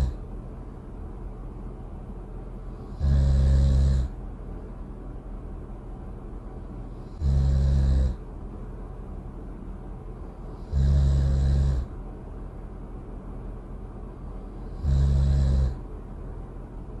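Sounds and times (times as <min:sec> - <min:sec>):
cartoon snoring: 0:00.0 - 0:00.2, 0:02.8 - 0:04.2, 0:07.0 - 0:08.2, 0:10.5 - 0:11.9, 0:14.6 - 0:15.8
low background noise: 0:00.0 - 0:17.0.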